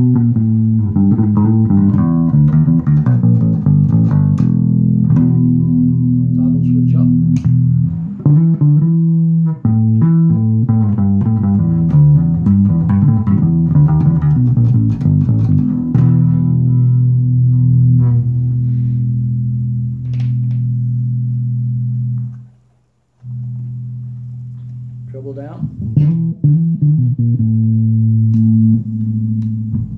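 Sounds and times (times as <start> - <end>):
ringing bass note: 0.0 - 22.5
electric bass plucked notes: 0.0 - 29.9.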